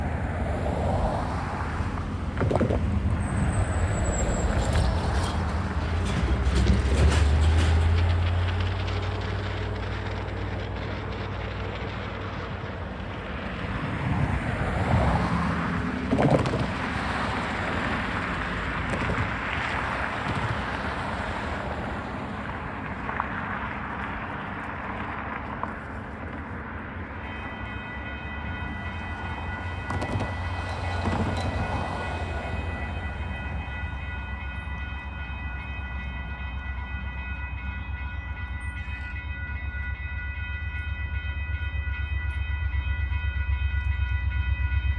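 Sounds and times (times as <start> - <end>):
diesel locomotive engines: 0.0 - 44.9
rumble and clatter of rail cars: 0.0 - 44.9
steady high ringing tone: 19.3 - 44.9.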